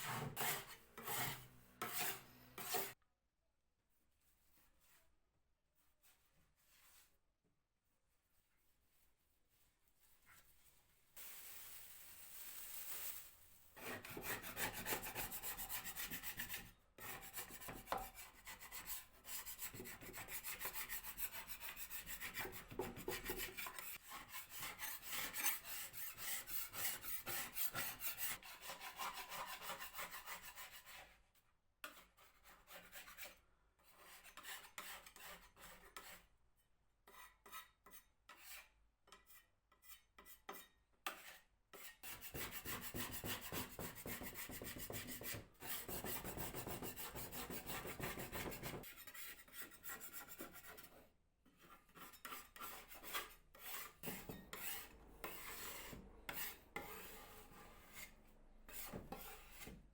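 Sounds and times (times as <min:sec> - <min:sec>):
hand tool rubbing wood: 0:00.0 - 0:03.0.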